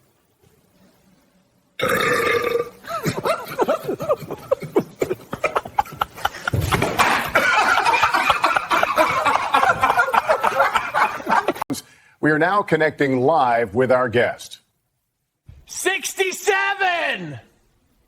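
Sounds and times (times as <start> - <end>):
loud long burp: 1.8 - 2.9.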